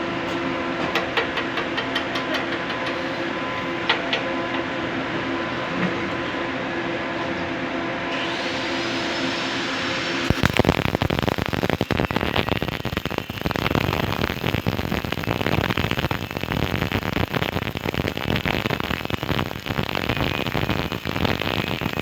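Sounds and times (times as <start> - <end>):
welding arc crackling: 8.1 - 22.0.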